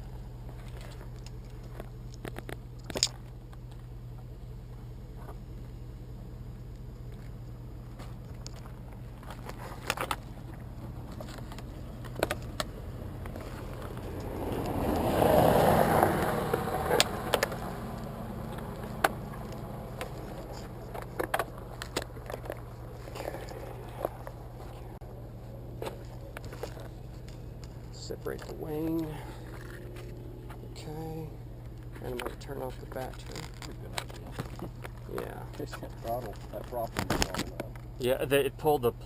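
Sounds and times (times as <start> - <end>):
steady low hum: 0.0 - 39.0
handling clicks and knocks: 0.5 - 3.9, 6.8 - 15.1, 15.9 - 25.0, 25.7 - 30.8, 31.6 - 38.0
road vehicle passing by: 10.5 - 32.1.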